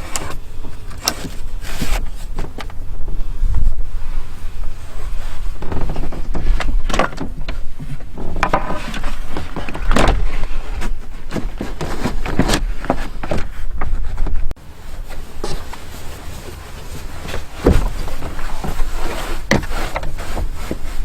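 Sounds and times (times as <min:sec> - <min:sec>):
clattering knocks and rustles: 0:00.0 - 0:21.0
wind buffeting microphone: 0:02.6 - 0:08.4.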